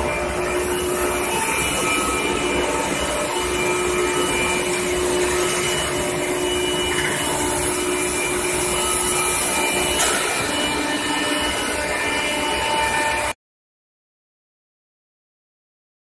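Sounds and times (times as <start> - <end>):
furnace drone with whining tones: 0.0 - 13.4.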